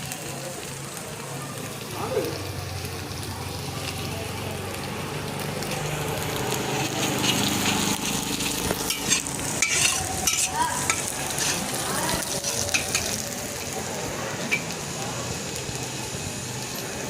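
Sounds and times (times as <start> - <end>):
garlic sizzling in oil: 0.0 - 17.0
spatula scraping a pan: 6.7 - 13.2.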